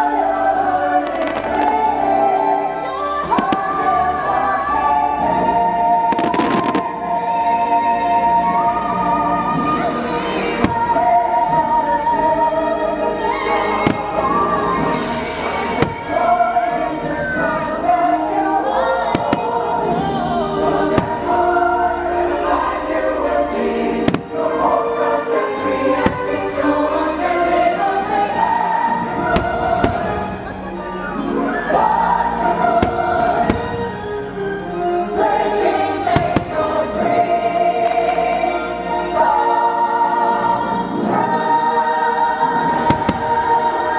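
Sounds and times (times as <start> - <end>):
orchestral music with choir: 0.0 - 43.9
firework bangs: 1.0 - 2.2, 6.1 - 7.0, 13.7 - 16.4, 20.9 - 21.5, 24.0 - 24.8, 25.5 - 26.7, 28.4 - 30.6, 32.6 - 34.2, 36.0 - 37.2, 42.5 - 43.9.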